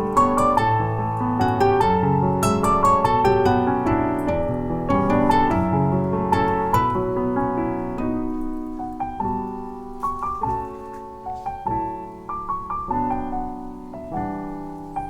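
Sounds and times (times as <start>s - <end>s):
gentle piano melody: 0.0s - 15.0s.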